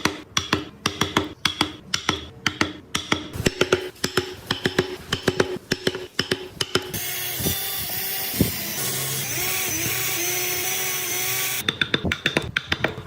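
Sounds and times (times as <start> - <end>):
music with clicking percussive beat: 0.0 - 8.5, 11.6 - 13.0
power tool cutting wood: 6.9 - 11.6.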